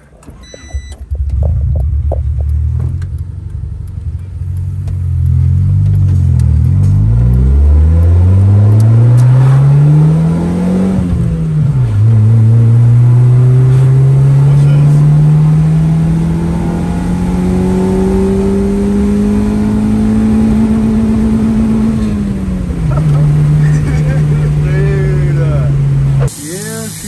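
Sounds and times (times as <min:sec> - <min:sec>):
car engine accelerating: 0:00.0 - 0:27.0.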